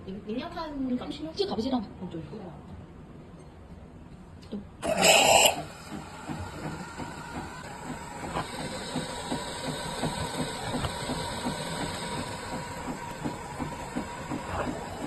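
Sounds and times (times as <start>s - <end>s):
espresso machine hissing: 4.8s - 15.0s
espresso machine ticking clatter: 4.8s - 15.0s.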